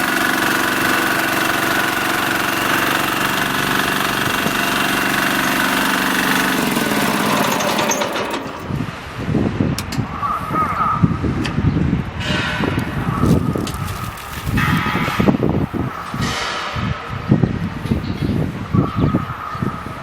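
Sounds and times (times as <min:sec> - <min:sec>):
road roller engine running: 0:00.0 - 0:09.2.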